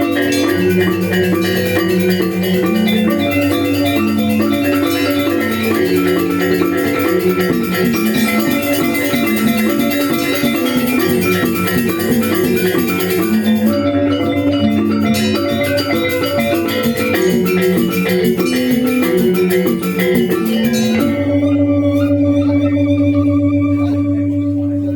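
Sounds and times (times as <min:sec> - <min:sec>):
metallophones ringing: 0:00.0 - 0:24.9
sustained low tone: 0:21.0 - 0:24.9.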